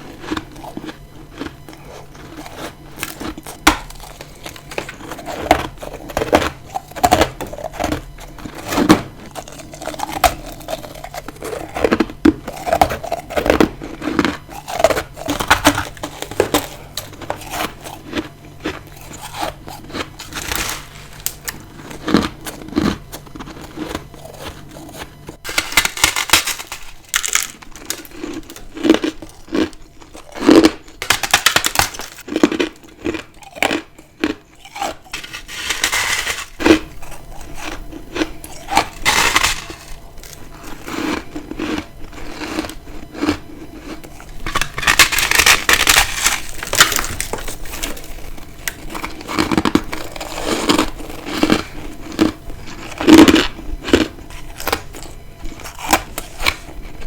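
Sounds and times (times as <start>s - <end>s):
biting and crunching ice: 0.0s - 57.0s
faint hum: 0.0s - 57.0s.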